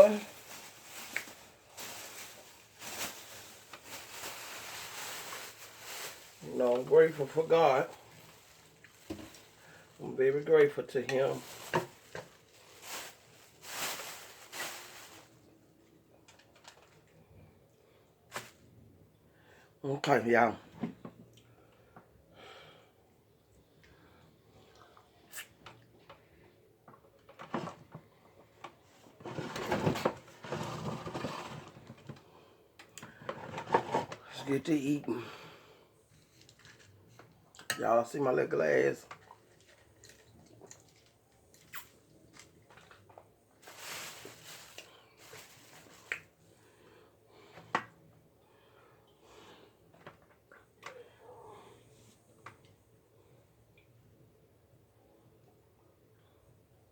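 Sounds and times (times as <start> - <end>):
dense crackling rustle: 0.0 - 15.4, 43.6 - 46.2
light food handling noises: 0.0 - 18.7, 23.5 - 48.3
rustle: 11.4 - 15.3.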